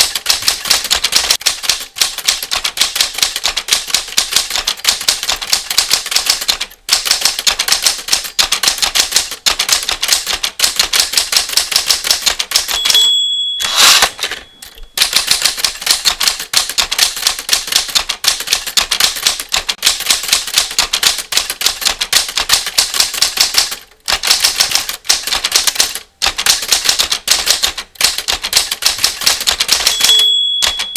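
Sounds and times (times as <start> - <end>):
typewriter keys striking: 0.0 - 30.9
typewriter margin bell ding: 12.6 - 15.6, 29.6 - 30.9
typewriter carriage return slide: 13.6 - 21.8.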